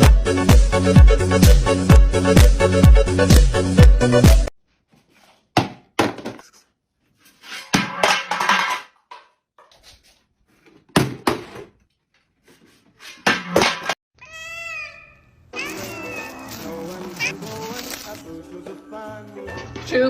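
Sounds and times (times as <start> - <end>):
cat meowing: 14.2 - 17.6.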